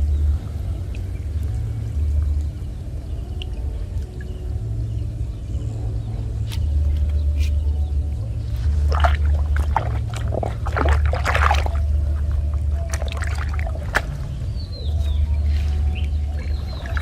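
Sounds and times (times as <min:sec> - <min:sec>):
low rumble: 0:00.0 - 0:17.0
water splashing and pouring: 0:08.5 - 0:14.5, 0:15.2 - 0:17.0.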